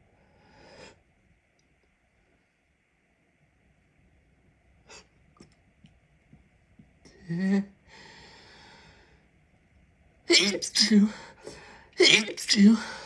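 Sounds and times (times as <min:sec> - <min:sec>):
man breathing: 0:07.9 - 0:09.3
voiced gasp before sneeze: 0:10.3 - 0:13.0.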